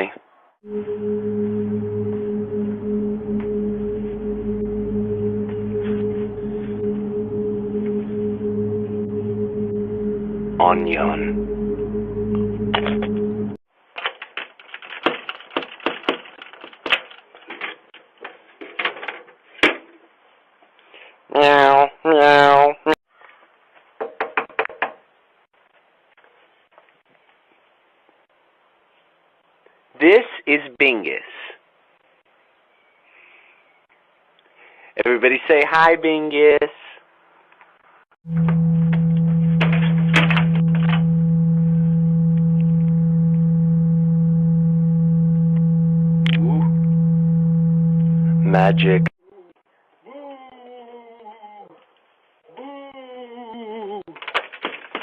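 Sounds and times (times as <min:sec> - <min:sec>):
low electronic hum: 0:00.6 - 0:13.6, 0:38.2 - 0:49.1
sharp clicks and cracks: 0:13.9 - 0:17.8.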